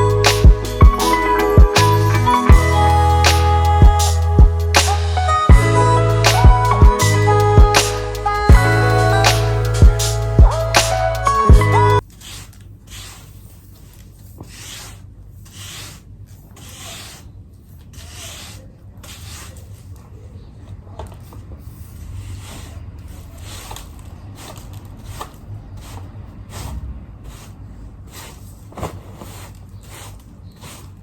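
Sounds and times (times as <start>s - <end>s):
scratching strokes on a surface: 12.0s - 20.2s, 21.2s - 31.0s.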